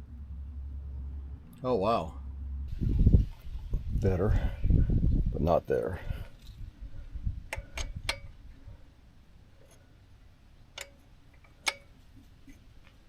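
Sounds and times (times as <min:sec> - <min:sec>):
wrench metallic clicks: 0:07.5 - 0:08.4, 0:10.7 - 0:12.0.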